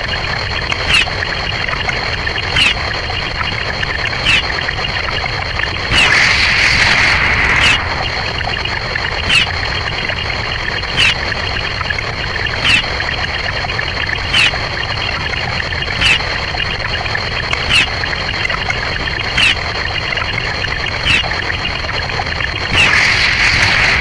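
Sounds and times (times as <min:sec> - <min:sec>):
constant high whine: 0:00.0 - 0:24.0
steady hiss: 0:22.7 - 0:24.0.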